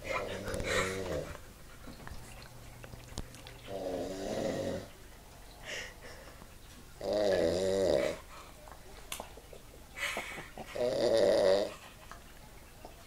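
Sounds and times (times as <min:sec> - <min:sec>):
quiet breathing: 0:00.1 - 0:01.5, 0:03.6 - 0:06.5, 0:07.6 - 0:08.8
man snoring loudly: 0:03.7 - 0:04.9, 0:07.0 - 0:08.2, 0:10.8 - 0:11.7.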